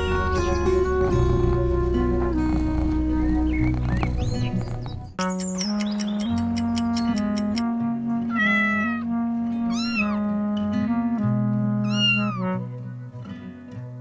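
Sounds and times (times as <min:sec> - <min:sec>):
background music: 0:00.0 - 0:14.0
cat meowing: 0:08.3 - 0:10.2, 0:11.8 - 0:12.5.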